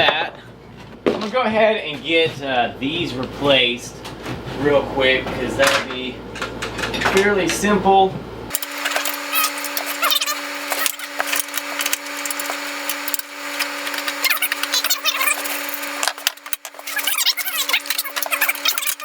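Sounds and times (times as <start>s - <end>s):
steady hum: 4.7s - 19.0s
parts and tools clicking: 8.5s - 19.0s.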